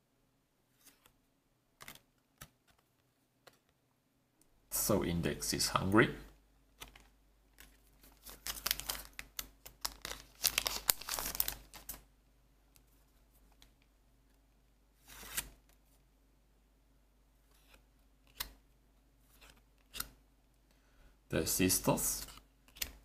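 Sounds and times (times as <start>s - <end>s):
cards and wrapper rustling: 6.8s - 12.0s.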